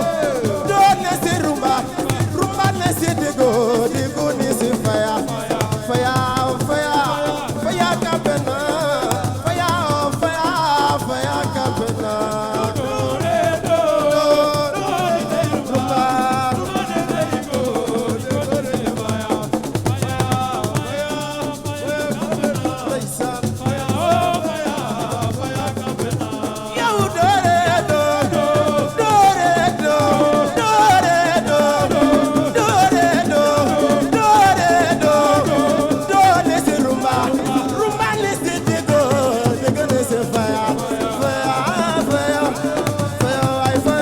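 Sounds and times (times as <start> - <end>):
person singing: 0.0 - 5.7, 20.2 - 44.0
shaker rattle: 0.0 - 44.0.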